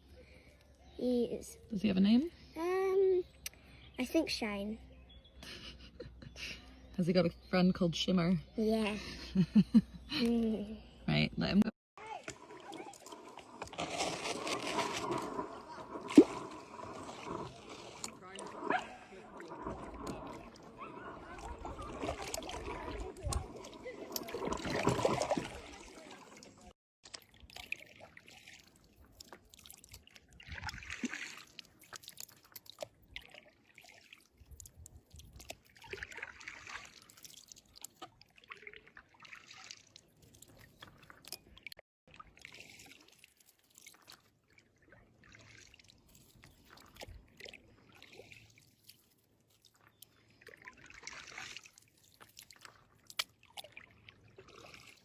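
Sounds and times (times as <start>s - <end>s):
water sloshing and dripping: 12.0s - 55.0s.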